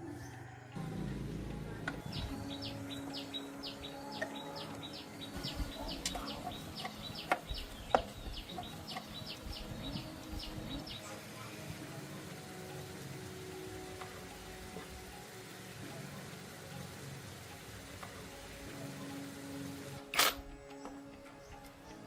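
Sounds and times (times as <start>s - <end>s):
small bird chirping: 1.9s - 11.5s.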